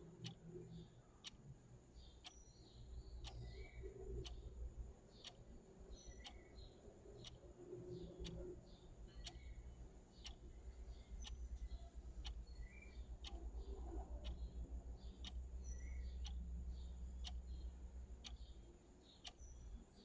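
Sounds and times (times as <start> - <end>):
clock ticking: 11.2 - 12.5, 14.2 - 14.5, 15.2 - 16.4, 17.2 - 17.6.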